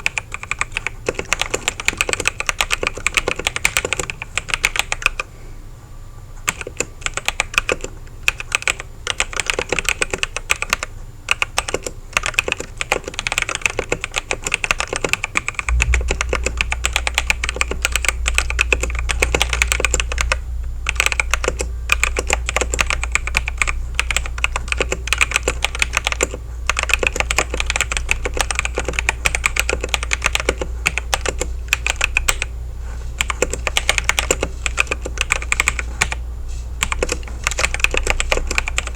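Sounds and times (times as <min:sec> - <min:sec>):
mechanical keyboard typing: 0:00.0 - 0:05.3, 0:06.4 - 0:32.5, 0:33.2 - 0:36.2, 0:36.8 - 0:38.9
steady low hum: 0:00.0 - 0:38.9.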